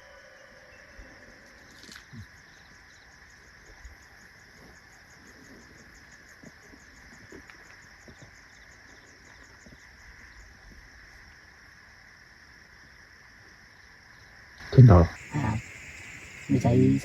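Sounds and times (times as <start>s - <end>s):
night insects chirping: 0.0s - 17.0s.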